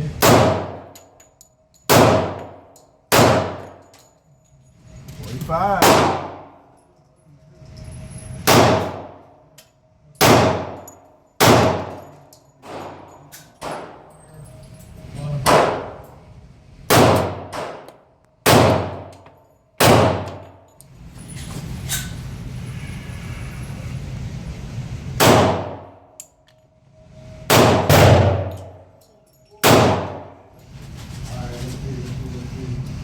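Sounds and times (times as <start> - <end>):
pistol shots echoing indoors: 0.1 - 1.1, 1.7 - 4.0, 5.8 - 6.7, 8.4 - 9.3, 10.2 - 14.1, 15.4 - 16.1, 16.9 - 20.7, 25.2 - 26.2, 27.5 - 29.0, 29.6 - 30.5.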